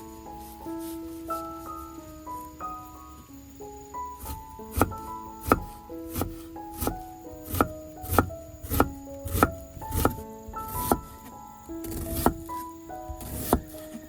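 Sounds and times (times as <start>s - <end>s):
piano music: 0.0s - 14.0s
knife chopping on cutting board: 4.2s - 11.1s, 11.8s - 12.5s, 13.2s - 13.8s.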